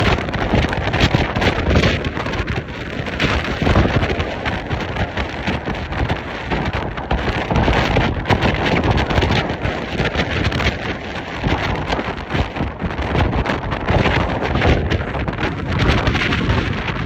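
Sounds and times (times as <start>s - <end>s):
gusty wind buffeting microphone: 0.0s - 17.0s.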